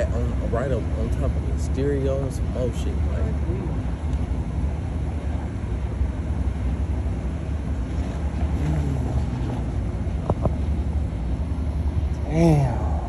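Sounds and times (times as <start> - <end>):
car engine idling: 0.0 - 13.0
faint distant voice: 8.5 - 9.6.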